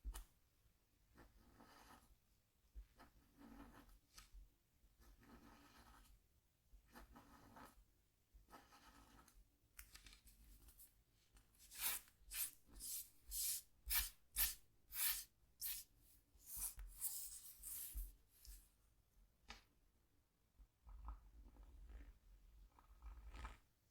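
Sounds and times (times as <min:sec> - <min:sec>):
tool scraping scratchboard: 0:11.6 - 0:18.1.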